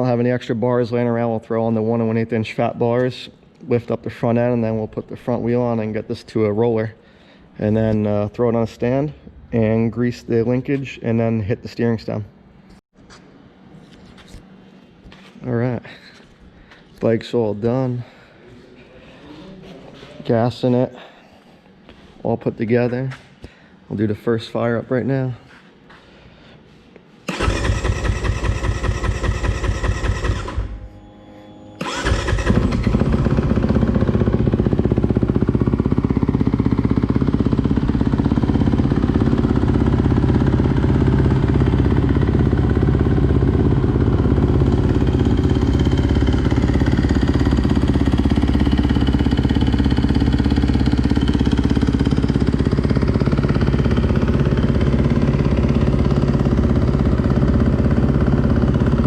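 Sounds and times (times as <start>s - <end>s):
motorcycle engine cranking: 27.3s - 30.9s, 31.8s - 59.0s
motorcycle engine running: 27.3s - 31.1s, 31.8s - 59.0s.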